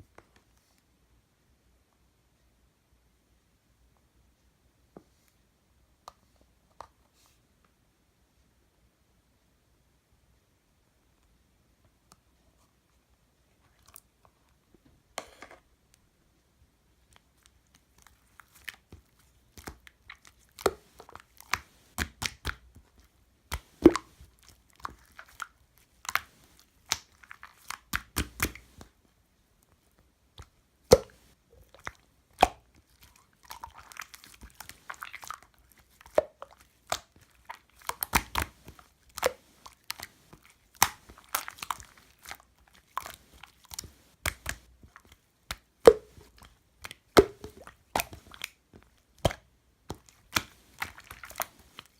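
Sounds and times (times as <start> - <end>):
slime clicking and popping: 19.5 - 22.8, 23.5 - 28.9, 30.4 - 40.1, 40.7 - 48.6.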